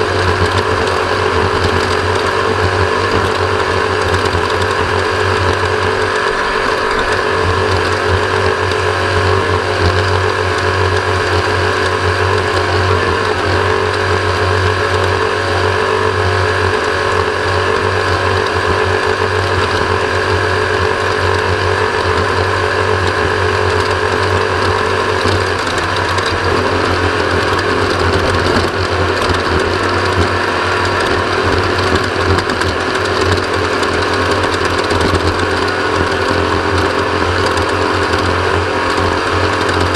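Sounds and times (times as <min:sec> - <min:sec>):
engine and drivetrain drone: 0:00.0 - 0:39.9
whirring gear noise: 0:00.0 - 0:39.9.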